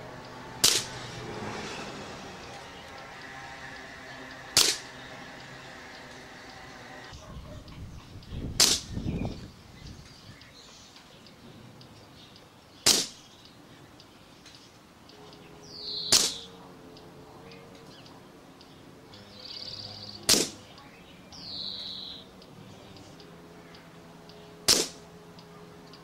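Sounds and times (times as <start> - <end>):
bird chirps and trill: 0.0 - 26.0
air rifle shot crack: 0.6 - 1.0, 4.6 - 4.9, 8.6 - 8.9, 12.8 - 13.2, 16.1 - 16.4, 20.3 - 20.6, 24.7 - 25.0.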